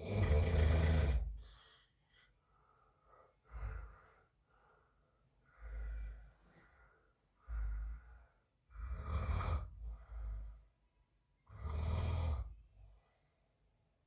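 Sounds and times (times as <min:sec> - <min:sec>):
man snoring: 0:00.0 - 0:01.3, 0:08.8 - 0:09.8, 0:11.5 - 0:12.5.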